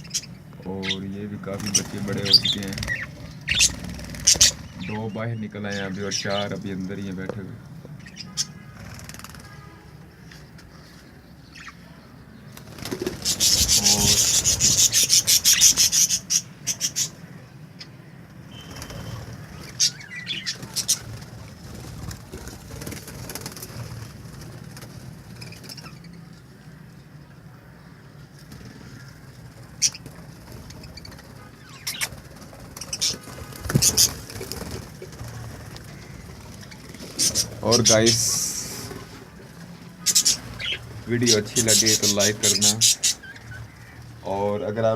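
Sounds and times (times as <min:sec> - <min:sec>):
budgerigars chirping: 0:00.0 - 0:06.6, 0:13.0 - 0:17.4, 0:18.5 - 0:21.2, 0:29.8 - 0:32.2, 0:32.8 - 0:34.4, 0:35.9 - 0:38.9, 0:40.0 - 0:44.9
budgerigar wings fluttering: 0:01.5 - 0:04.9, 0:08.6 - 0:09.7, 0:12.5 - 0:16.1, 0:18.5 - 0:26.0, 0:29.7 - 0:39.0.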